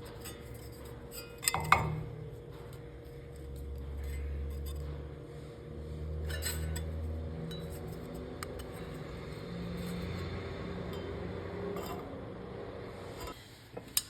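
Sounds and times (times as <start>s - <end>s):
steady low hum: 0.0s - 14.0s
metal pieces clinking and scraping: 6.2s - 9.0s.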